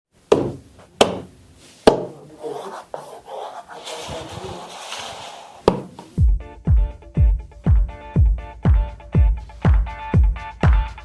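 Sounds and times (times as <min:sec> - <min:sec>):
box rubbing and scraping: 0:02.3 - 0:06.1
music with heavy bass beat: 0:06.2 - 0:11.0.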